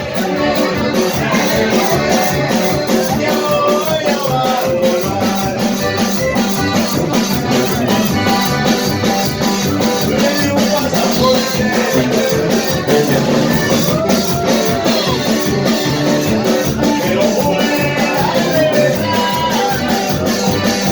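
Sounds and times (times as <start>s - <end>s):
banda band playing loudly: 0.0s - 20.9s
drums keeping a steady beat: 0.0s - 20.9s
sliding voice or horn line: 0.1s - 20.9s.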